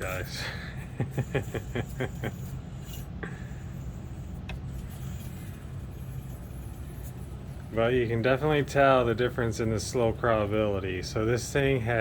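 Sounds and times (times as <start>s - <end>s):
low steady hum: 0.0s - 12.0s
man laughing: 0.4s - 2.5s.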